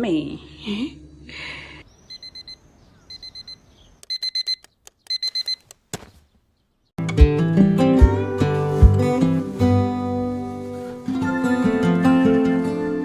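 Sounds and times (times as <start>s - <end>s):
digital alarm clock beeping: 2.1s - 5.6s.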